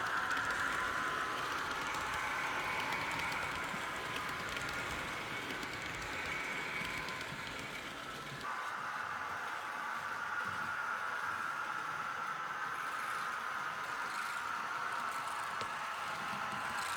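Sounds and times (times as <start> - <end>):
wheels clicking on rails: 0.0 - 8.5, 13.9 - 16.9
model train rolling whir: 0.0 - 16.9.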